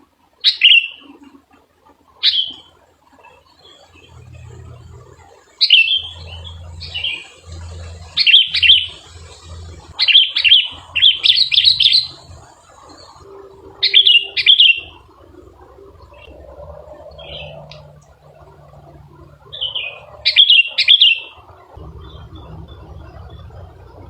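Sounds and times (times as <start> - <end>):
decoy bird call chirps: 3.5 - 24.0.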